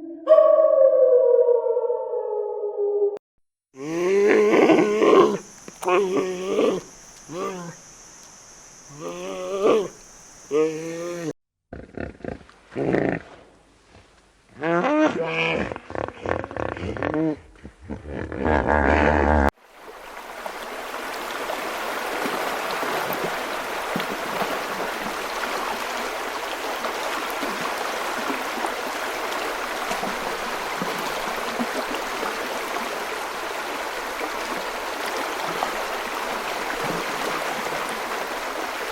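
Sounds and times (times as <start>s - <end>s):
running water trickling: 4.3s - 11.3s, 19.6s - 38.9s.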